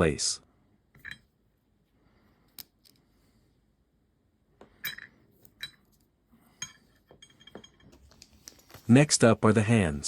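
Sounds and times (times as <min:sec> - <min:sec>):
light metallic clinks and taps: 0:04.6 - 0:08.8.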